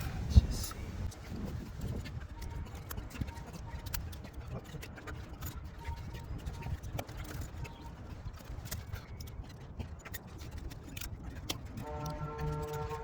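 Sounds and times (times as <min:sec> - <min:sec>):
steady low rumble: 0:00.0 - 0:08.6.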